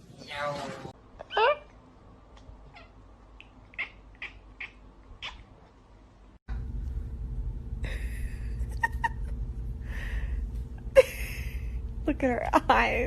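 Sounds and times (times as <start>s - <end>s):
steady low rumble: 6.5s - 13.0s.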